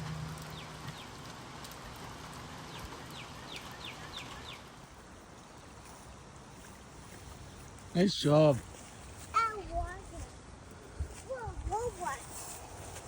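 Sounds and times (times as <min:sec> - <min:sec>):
faint outdoor hiss: 0:00.0 - 0:13.0
bird chirping: 0:02.6 - 0:04.8.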